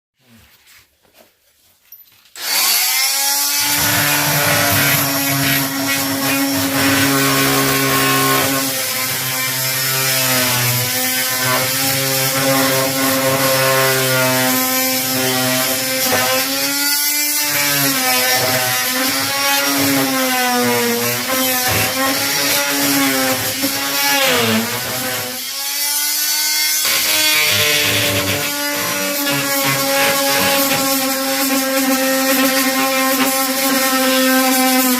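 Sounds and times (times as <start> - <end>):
electric power saw cutting: 2.4 - 34.9.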